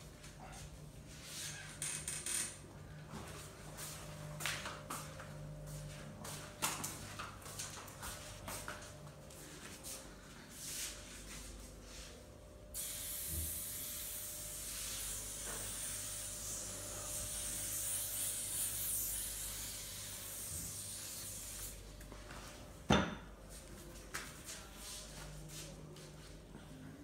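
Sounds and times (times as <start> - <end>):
spray-like hiss: 12.8 - 21.8.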